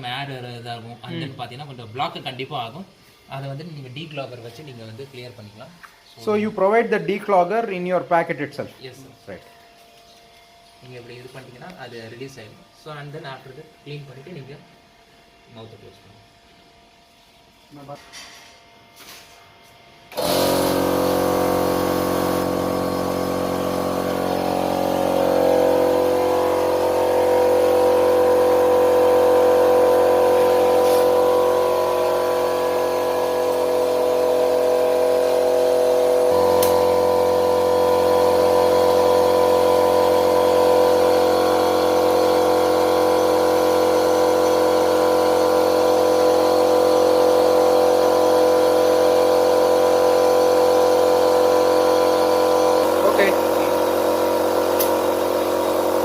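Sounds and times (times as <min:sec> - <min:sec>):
electric air compressor running: 0:00.0 - 0:56.0.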